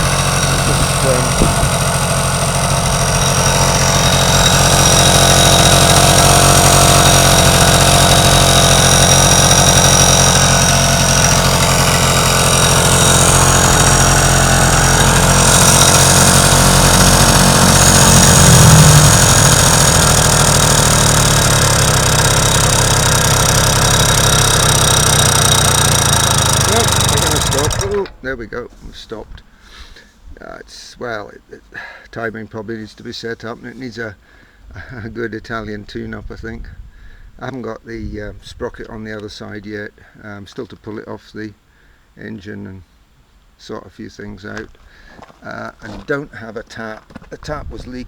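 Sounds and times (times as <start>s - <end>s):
moped engine running: 0.0s - 28.2s.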